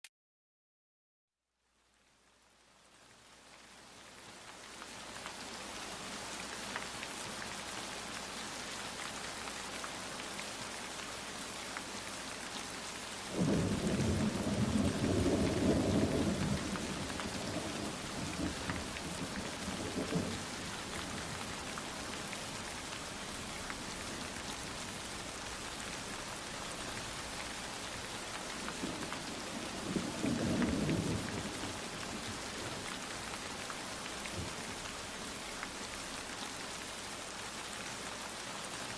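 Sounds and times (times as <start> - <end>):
steady rain falling: 1.6 - 38.9
rolling thunder: 13.4 - 21.3, 28.8 - 32.2.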